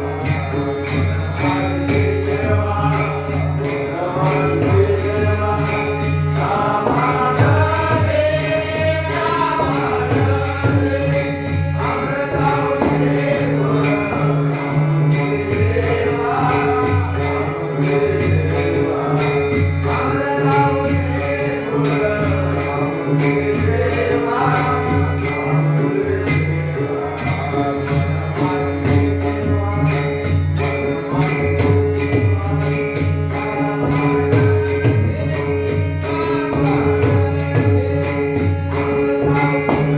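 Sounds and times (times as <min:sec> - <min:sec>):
jingling percussion: 0:00.0 - 0:39.9
person singing devotional song: 0:00.0 - 0:39.9.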